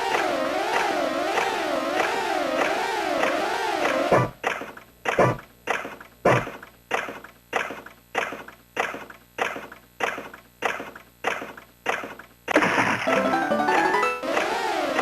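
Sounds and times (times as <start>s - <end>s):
machine music: 0.0s - 4.4s, 13.1s - 15.0s.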